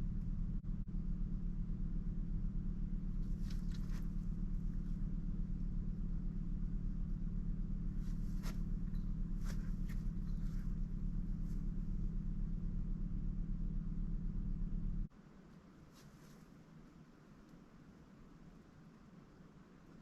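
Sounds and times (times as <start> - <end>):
steady low hum: 0.0 - 20.0
duck moving with clicks and rustles: 3.2 - 5.0, 8.0 - 11.8.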